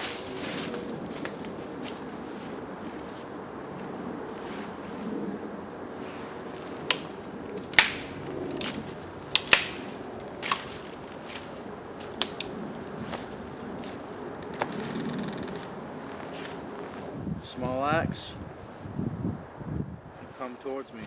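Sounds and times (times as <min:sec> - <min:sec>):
dry sticks snapping: 0:00.0 - 0:02.0, 0:06.7 - 0:14.7.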